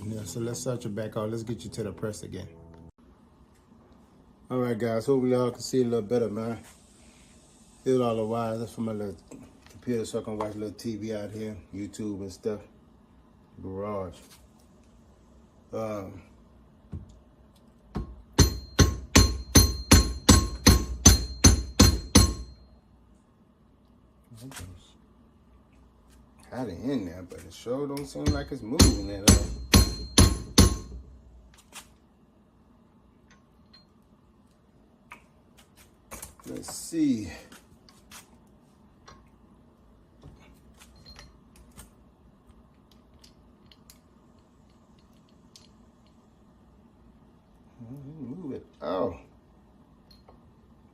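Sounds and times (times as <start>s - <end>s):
steady low hum: 0.0s - 50.9s
hammer blows on metal: 18.0s - 22.6s, 28.1s - 31.1s
metal tools clicking and tapping: 28.0s - 31.0s, 40.9s - 41.7s, 50.0s - 50.4s.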